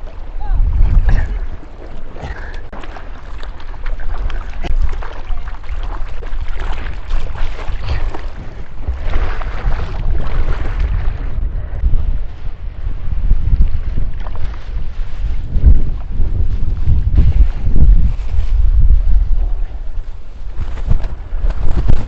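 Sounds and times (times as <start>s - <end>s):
water splashing and sloshing: 0.0s - 22.0s
wind buffeting microphone: 0.0s - 22.0s.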